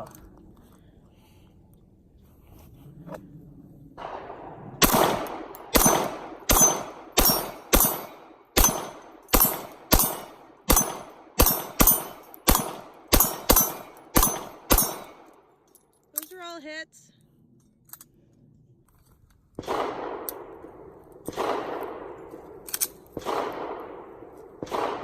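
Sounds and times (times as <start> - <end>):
pistol shots hitting steel: 4.8 - 15.4, 21.3 - 25.0.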